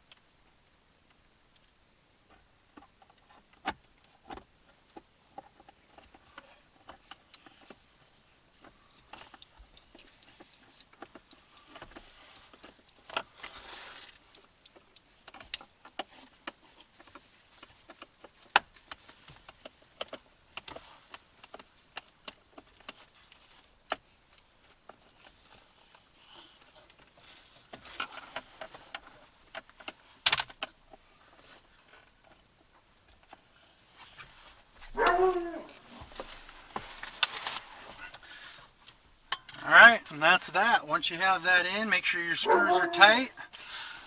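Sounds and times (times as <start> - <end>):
short rustle: 7.4 - 14.5, 33.2 - 40.8.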